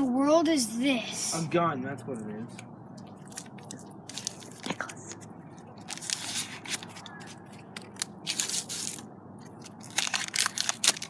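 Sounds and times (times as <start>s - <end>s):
crinkly material crackling: 3.2s - 11.0s.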